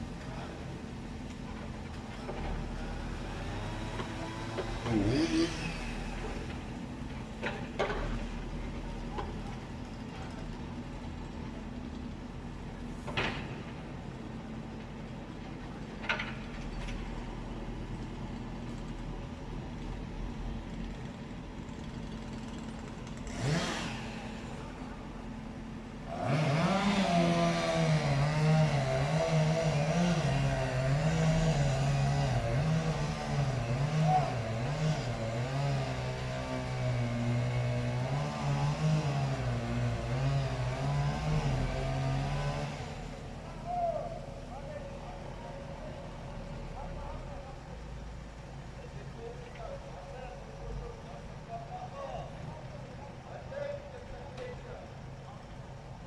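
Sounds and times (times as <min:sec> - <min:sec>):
louder engine running: 0:01.6 - 0:08.4, 0:21.6 - 0:43.6.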